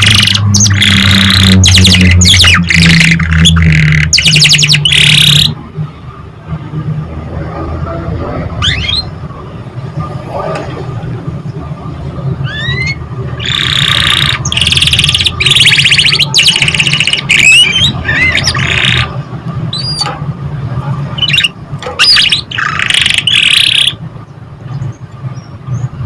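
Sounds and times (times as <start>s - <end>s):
canary singing trills: 0.0s - 5.6s, 8.6s - 9.2s, 12.3s - 20.1s, 21.1s - 26.0s.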